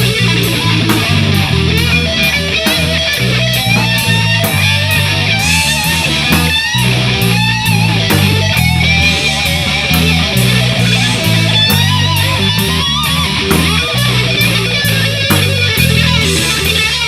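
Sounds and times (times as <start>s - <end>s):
bass line: 0.0s - 17.0s
drum beat: 0.0s - 17.0s
electric guitar soloing: 0.0s - 17.0s.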